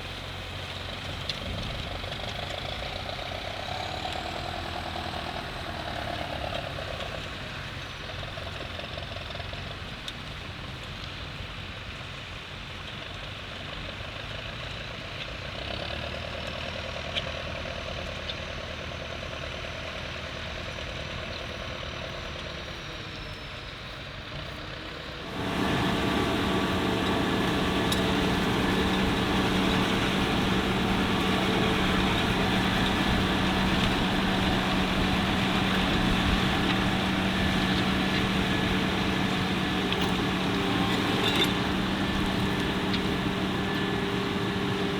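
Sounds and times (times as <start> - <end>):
tractor engines running: 23.6 - 44.9.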